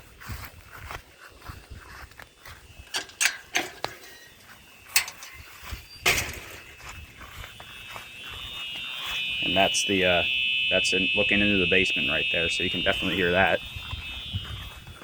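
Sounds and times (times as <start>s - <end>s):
footsteps outdoors: 0.0s - 15.0s
faint fire alarm horn: 3.9s - 15.0s.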